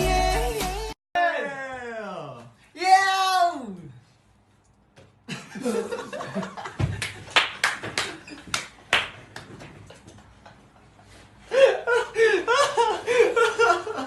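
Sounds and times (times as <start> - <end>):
hands clapping: 7.0 - 9.6.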